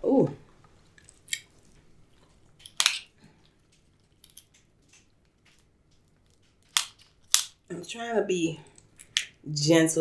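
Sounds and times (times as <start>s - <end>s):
crab shell snapping: 2.6s - 3.1s, 4.2s - 7.6s.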